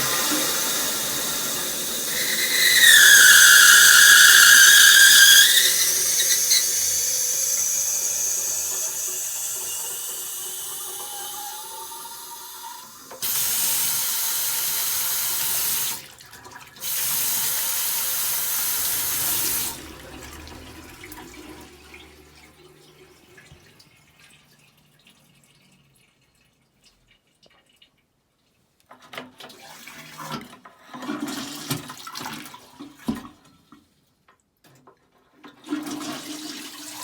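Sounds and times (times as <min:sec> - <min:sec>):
rushes of spraying water: 0:00.0 - 0:12.0, 0:16.8 - 0:20.7
toilet whine: 0:00.0 - 0:23.8, 0:35.6 - 0:37.0.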